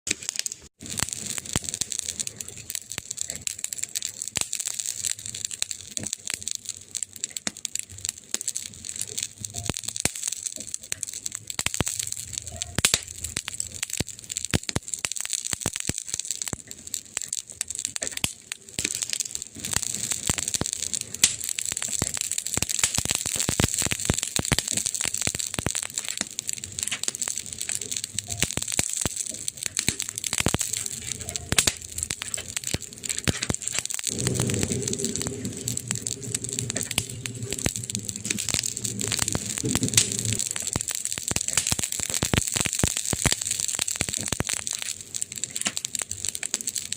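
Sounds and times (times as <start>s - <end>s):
wood fire crackling: 0.1s - 46.9s.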